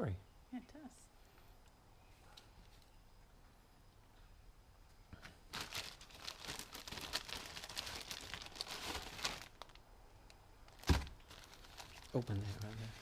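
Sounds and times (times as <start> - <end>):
plastic wrapping crinkling: 5.5 - 9.8, 10.6 - 13.0.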